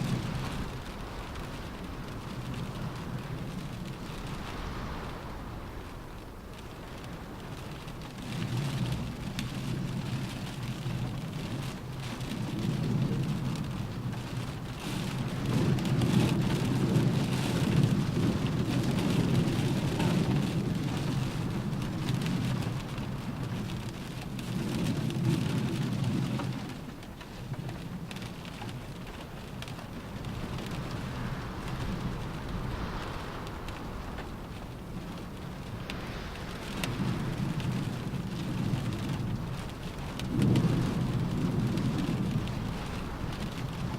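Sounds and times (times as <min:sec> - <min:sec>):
rain on a car roof: 0:00.0 - 0:43.9
low rumble: 0:29.0 - 0:43.9.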